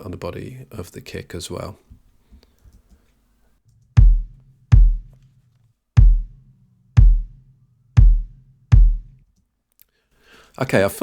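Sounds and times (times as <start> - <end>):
kick drum thuds: 4.0 - 5.2, 6.0 - 9.2.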